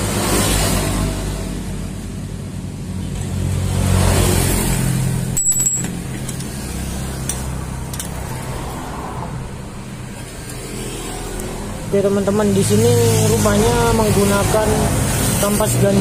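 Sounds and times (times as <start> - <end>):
vehicle engine humming: 0.9 - 16.0
high-pitched metallic ring: 5.4 - 6.0.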